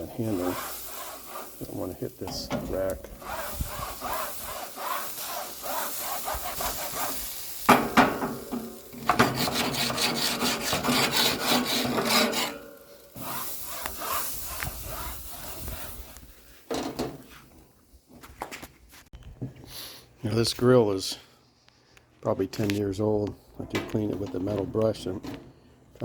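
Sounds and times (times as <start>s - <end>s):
brush scrubbing hot grill grates: 0.0s - 17.5s.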